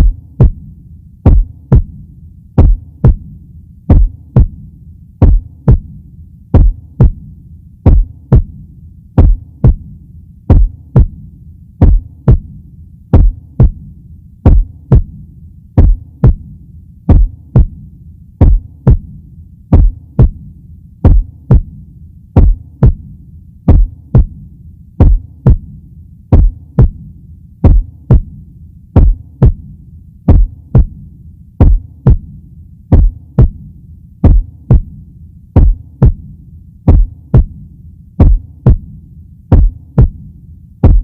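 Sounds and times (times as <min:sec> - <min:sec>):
heartbeat thumps: 0:00.0 - 0:02.0, 0:02.6 - 0:11.2, 0:11.8 - 0:21.8, 0:22.4 - 0:28.4, 0:29.0 - 0:29.7, 0:30.3 - 0:31.0, 0:31.6 - 0:35.0, 0:35.6 - 0:36.3, 0:36.9 - 0:37.6, 0:38.2 - 0:41.0.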